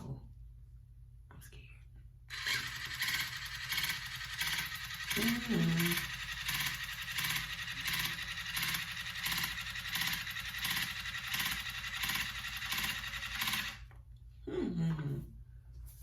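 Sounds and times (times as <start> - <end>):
water flosser pulsing spray: 2.3 - 13.8.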